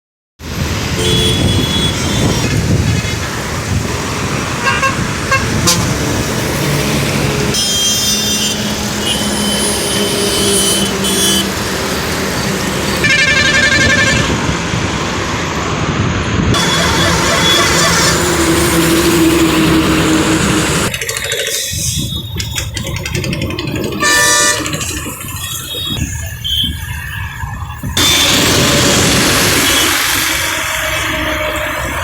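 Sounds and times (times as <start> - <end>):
road traffic noise: 0.4 - 32.0
truck horns honking: 0.8 - 15.3, 16.5 - 21.0, 23.8 - 27.0, 27.9 - 32.0.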